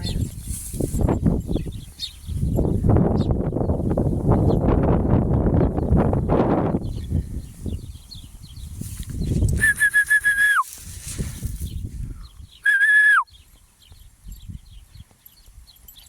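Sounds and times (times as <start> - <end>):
wind noise: 0.0 - 15.9
rustling: 8.8 - 11.7
dog whistle blown: 9.6 - 10.7, 12.6 - 13.3.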